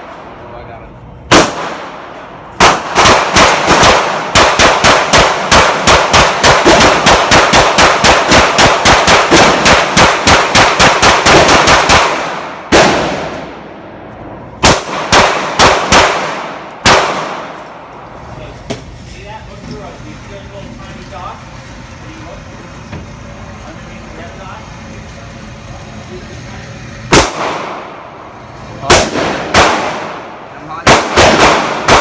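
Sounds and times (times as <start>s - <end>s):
pistol gunfire with echo: 1.3s - 13.6s, 14.6s - 17.8s, 27.1s - 28.0s, 28.9s - 32.0s.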